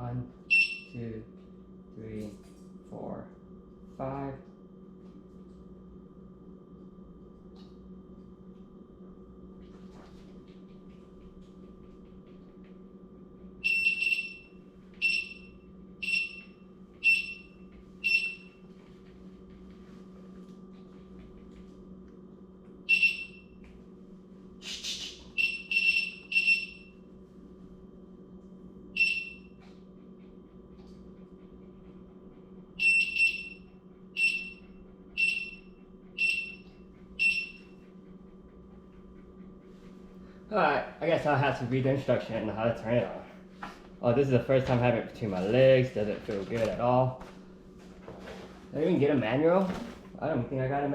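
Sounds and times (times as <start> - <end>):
buzzer short high beeps: 13.6 - 14.4.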